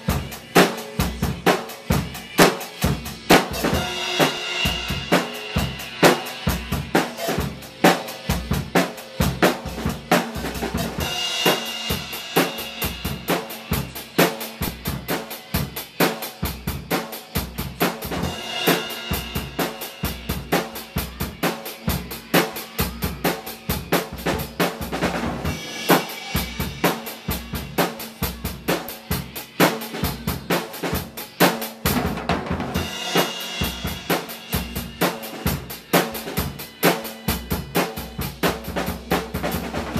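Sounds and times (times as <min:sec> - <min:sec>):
drum kit groove: 0:00.0 - 0:39.9
cymbal crashes: 0:03.6 - 0:08.1, 0:18.2 - 0:20.9.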